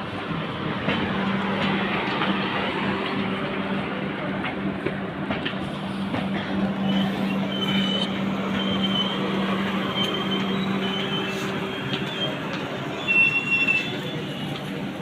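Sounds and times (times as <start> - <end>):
train rumble: 0.0 - 15.0
high-pitched squeals: 6.7 - 14.6.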